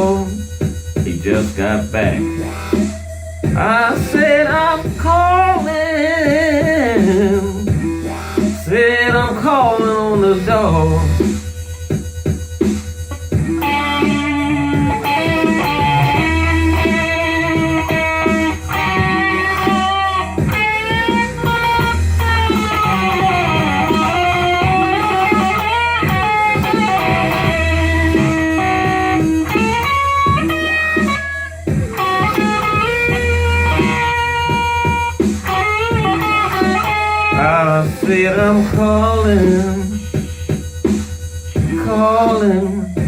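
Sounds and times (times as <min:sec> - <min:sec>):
steady bass line: 0:00.0 - 0:43.0
blues electric guitar solo: 0:13.4 - 0:39.7.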